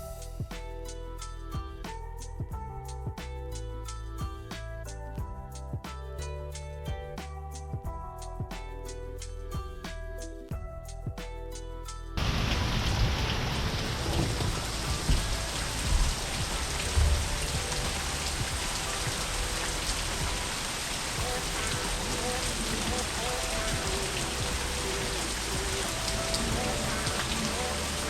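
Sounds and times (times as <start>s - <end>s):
low thumps: 12.2s - 27.8s
rain pattering: 12.2s - 28.0s.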